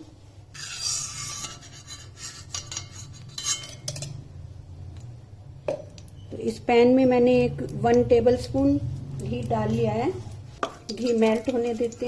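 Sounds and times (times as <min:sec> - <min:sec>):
metal spoon scraping a pan: 0:00.5 - 0:04.2, 0:09.3 - 0:12.0.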